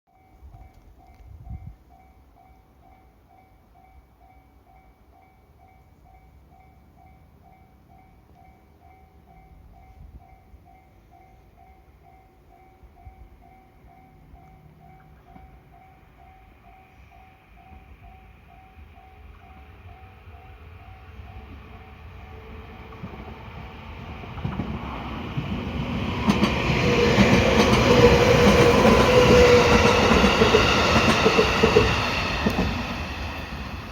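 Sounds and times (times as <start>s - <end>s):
crossing warning bell clanging: 0.2s - 23.3s
steady train tone: 0.2s - 33.9s
electric train passing: 2.4s - 33.9s
wheels clacking over rail joints: 22.8s - 33.9s.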